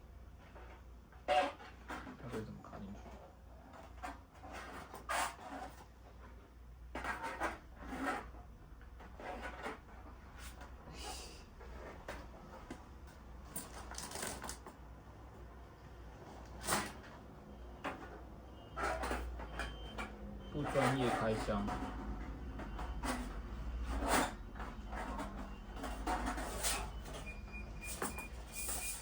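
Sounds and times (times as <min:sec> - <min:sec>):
metal parts scraping and clattering: 0:13.5 - 0:14.7, 0:22.8 - 0:29.0.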